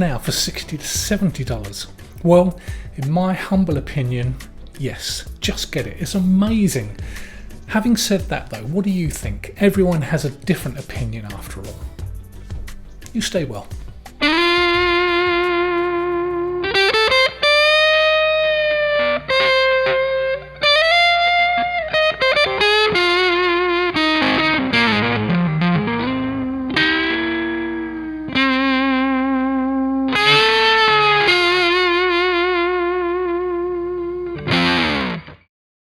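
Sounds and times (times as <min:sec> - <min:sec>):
overdriven electric guitar lead: 0:11.6 - 0:35.5.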